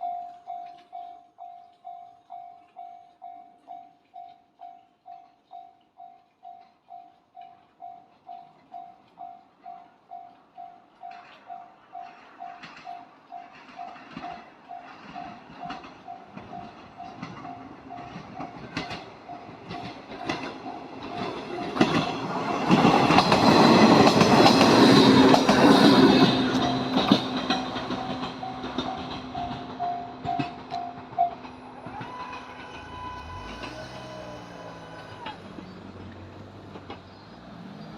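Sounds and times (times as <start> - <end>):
level-crossing warning bell ringing: 0.0 - 36.1
train wheels clicking over rail joints: 0.0 - 37.9.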